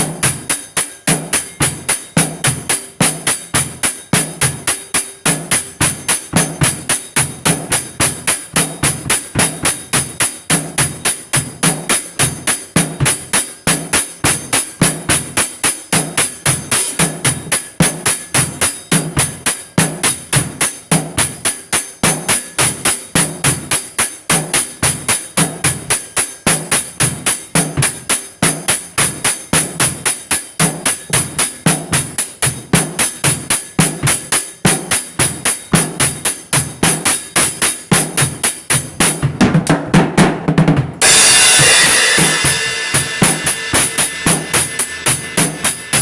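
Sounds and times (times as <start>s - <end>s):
fast percussion beat: 0.0s - 46.0s.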